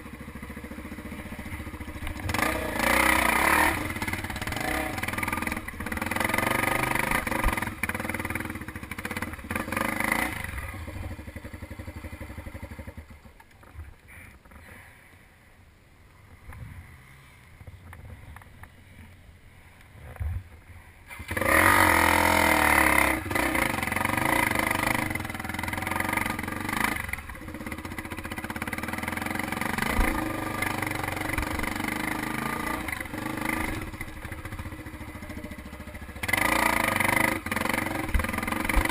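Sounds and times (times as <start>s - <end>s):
dirt bike engine revving: 0.0s - 13.2s, 21.1s - 38.9s.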